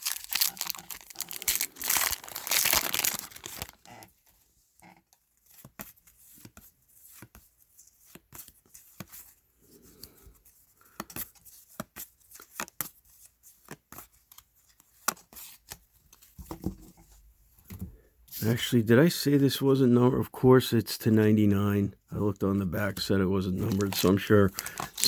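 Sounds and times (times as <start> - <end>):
trading cards flipped by hand: 23.6 - 25.0.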